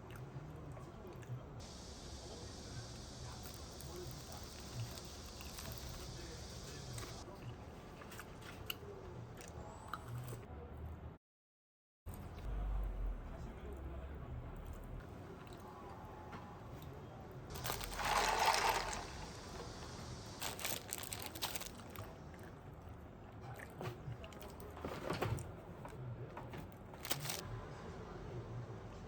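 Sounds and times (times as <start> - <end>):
rustling and crunching food: 0.1 - 10.4, 17.5 - 27.4
clicks and crunches: 17.5 - 22.5, 26.9 - 27.4.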